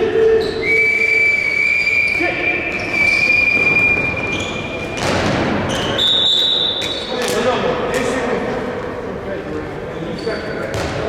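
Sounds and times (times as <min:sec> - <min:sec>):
players' voices: 0:00.0 - 0:11.0
ball thudding on court floor: 0:10.7 - 0:11.0.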